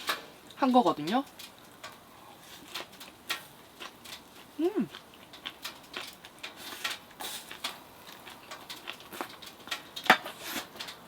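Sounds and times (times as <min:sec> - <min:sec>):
chewing: 0:01.5 - 0:10.9.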